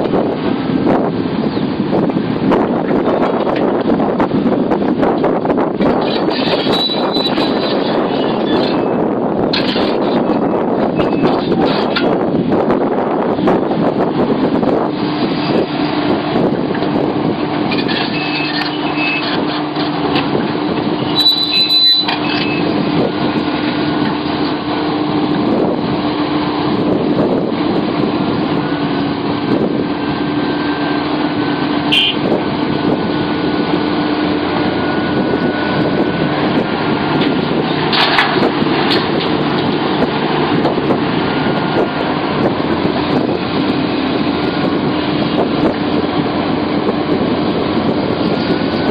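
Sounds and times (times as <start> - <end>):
excavator diesel engine: 0.0 - 48.9.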